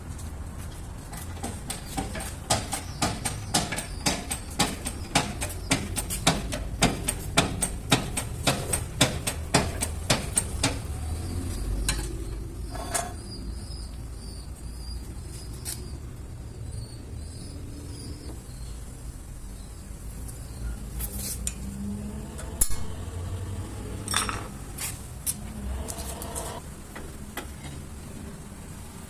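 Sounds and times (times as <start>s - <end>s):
hammer striking metal: 1.4s - 10.9s.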